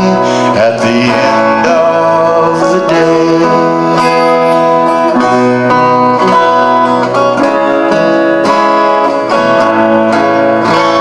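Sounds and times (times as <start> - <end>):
acoustic folk band instrumental: 0.0 - 11.0
picked guitar notes: 0.0 - 11.0.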